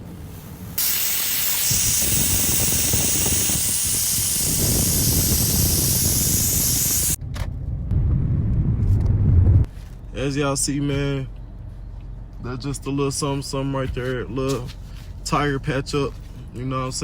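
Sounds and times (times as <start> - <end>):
low rumbling noise: 0.0 - 14.0
compressed air hissing into tyre: 0.2 - 7.2.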